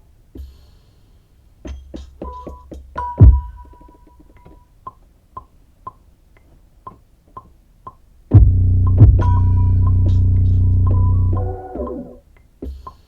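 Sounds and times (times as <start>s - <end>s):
percussion hits and deep kick: 8.3s - 12.2s.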